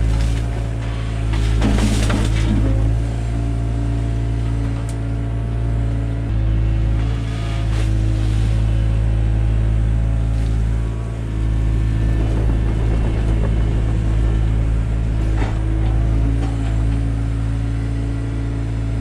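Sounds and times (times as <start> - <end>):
excavator diesel engine running: 0.0 - 19.0
rough grainy noise: 11.0 - 17.2.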